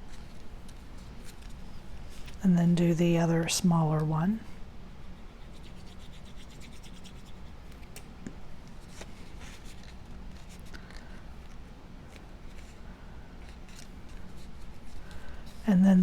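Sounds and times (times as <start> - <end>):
paper rubbing and scratching: 5.1 - 7.9, 8.6 - 11.0.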